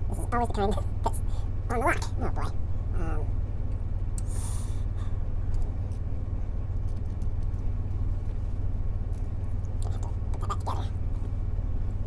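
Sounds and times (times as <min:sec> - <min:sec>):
low background hum: 0:00.0 - 0:12.0.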